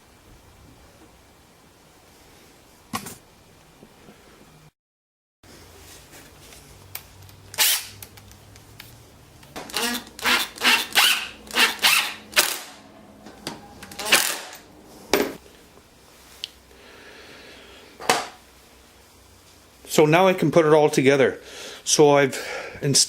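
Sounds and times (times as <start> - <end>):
squeaky ring: 13.0 - 14.2.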